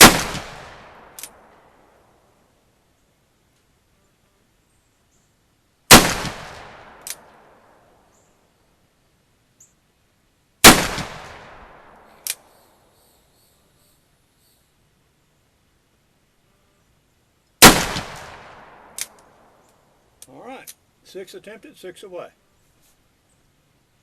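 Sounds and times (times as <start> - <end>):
revolver gunshots: 0.0 - 1.5, 5.9 - 7.6, 10.6 - 12.2, 17.6 - 19.2.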